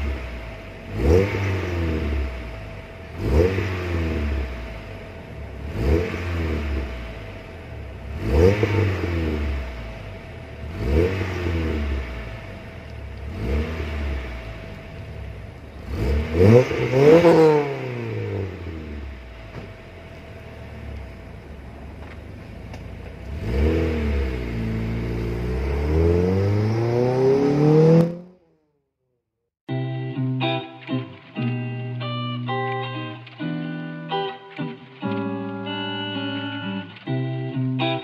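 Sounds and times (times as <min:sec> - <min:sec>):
car engine idling and revving: 0:00.0 - 0:28.8.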